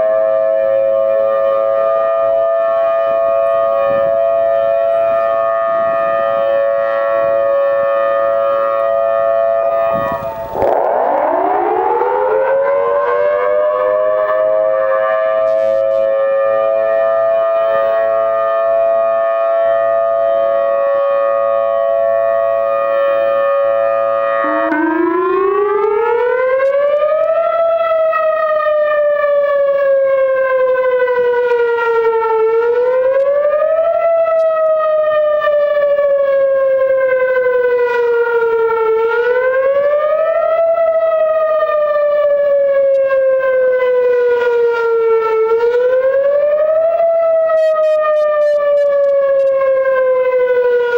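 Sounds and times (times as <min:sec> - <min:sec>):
outdoor warning siren: 0:00.0 - 0:50.9.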